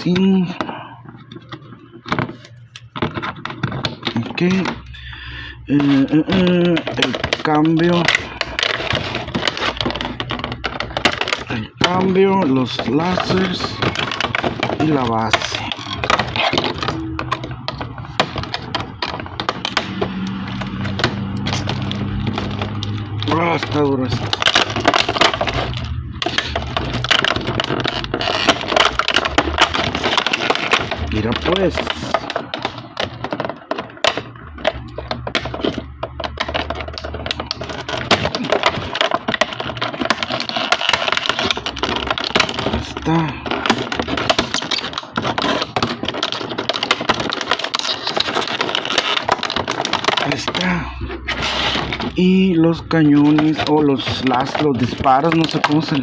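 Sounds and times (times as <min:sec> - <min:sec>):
plastic toy parts clicking: 0:05.7 - 0:56.0.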